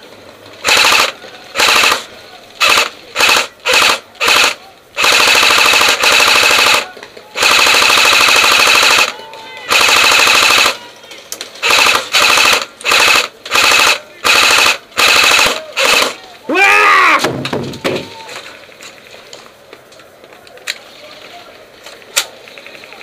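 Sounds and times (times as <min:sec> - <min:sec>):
airsoft gun firing full auto: 0:00.6 - 0:10.8, 0:11.6 - 0:16.2.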